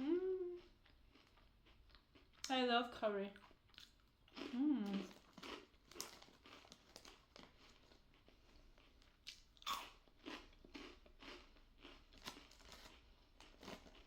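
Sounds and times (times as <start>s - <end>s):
rice cracker crunching: 4.4s - 14.0s.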